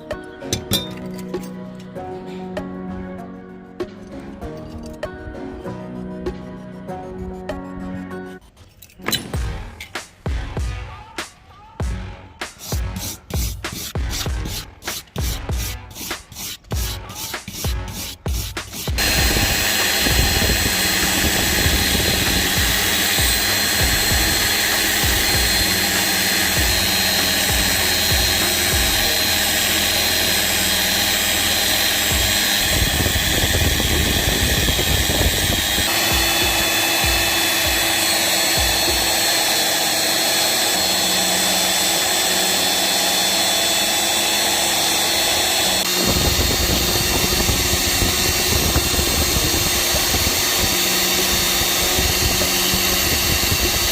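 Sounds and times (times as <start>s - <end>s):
power tool running: 15.2s - 53.9s.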